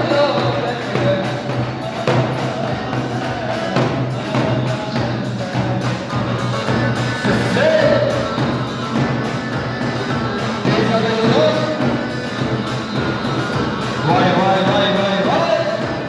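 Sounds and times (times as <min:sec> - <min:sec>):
dance music: 0:00.0 - 0:16.0.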